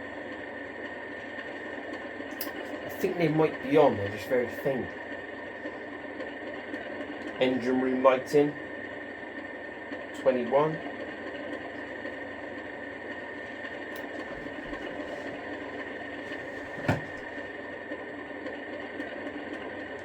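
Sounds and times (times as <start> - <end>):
diesel engine idling through small speaker: 6.9 - 20.0.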